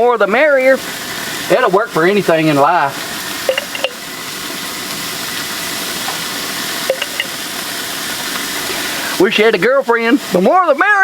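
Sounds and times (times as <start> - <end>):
meat sizzling on grill: 0.0 - 11.0.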